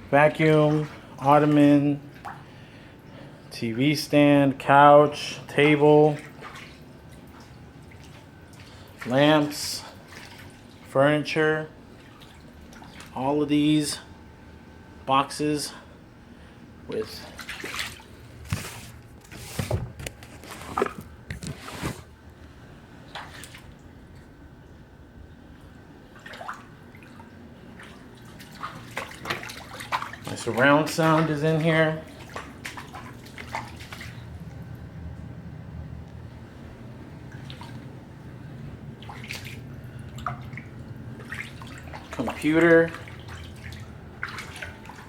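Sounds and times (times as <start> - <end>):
footsteps squelching on wet flooring: 0.3 - 2.5, 5.2 - 11.0, 11.9 - 13.2, 17.1 - 22.1, 26.2 - 34.9, 37.2 - 38.4, 39.0 - 45.0
water dripping and splashing: 0.3 - 2.5, 5.5 - 11.0, 11.8 - 13.2, 17.2 - 18.3, 23.1 - 24.4, 26.1 - 34.9, 37.2 - 38.3, 38.9 - 45.0
steady low rumble: 30.3 - 42.2.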